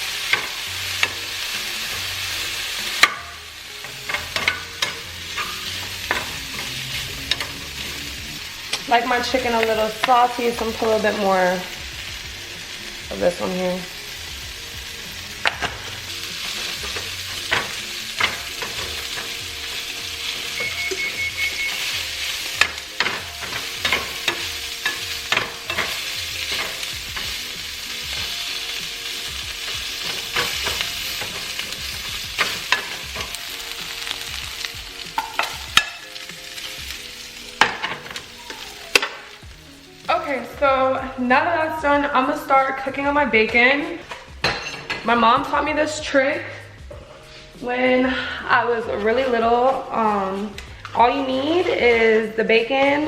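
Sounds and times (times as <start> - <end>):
chicken sizzling in a pan: 0.0 - 46.6
utensil scraping a pan: 0.1 - 11.2, 15.3 - 28.3, 29.3 - 34.2.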